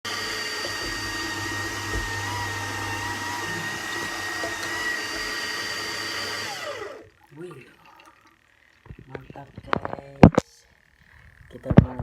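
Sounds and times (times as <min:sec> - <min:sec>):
blender motor whining: 0:00.0 - 0:07.2.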